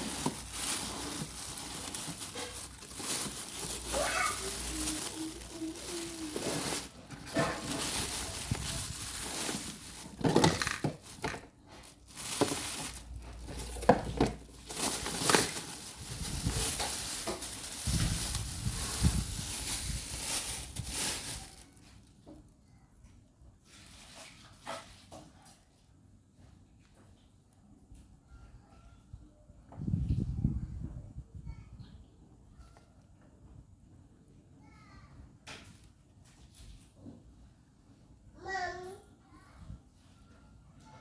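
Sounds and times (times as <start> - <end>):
packaging rustling and crinkling: 0.0 - 22.2.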